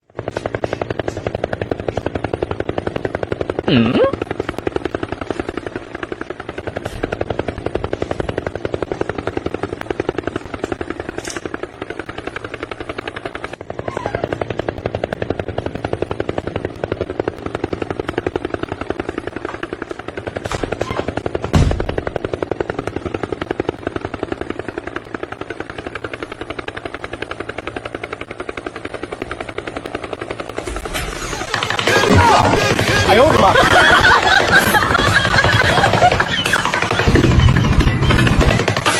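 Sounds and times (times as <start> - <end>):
machine running with fast pulse: 0.0 - 38.9
loud thump: 21.5 - 22.0.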